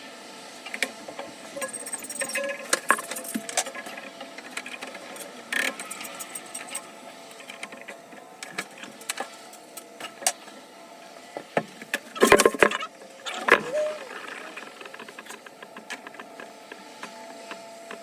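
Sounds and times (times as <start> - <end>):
hand tools and metal parts clicking: 1.6 - 10.4.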